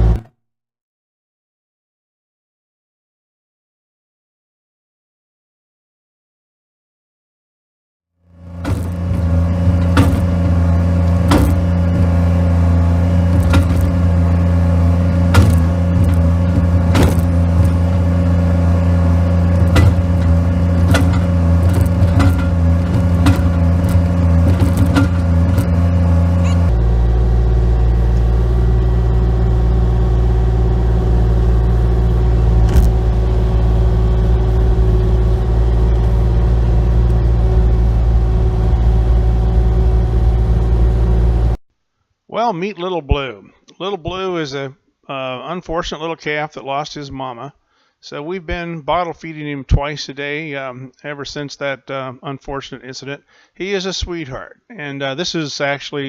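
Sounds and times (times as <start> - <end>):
deep engine drone: 0.0 - 0.3, 8.3 - 41.6
vehicle engine running: 0.0 - 0.3, 8.3 - 41.6
sharp clicks or knocks: 8.6 - 27.0, 27.8 - 40.7.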